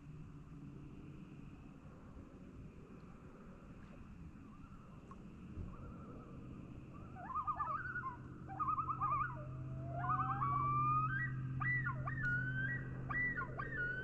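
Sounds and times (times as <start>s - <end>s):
steady low hum: 0.0s - 14.0s
loons calling: 4.4s - 14.0s.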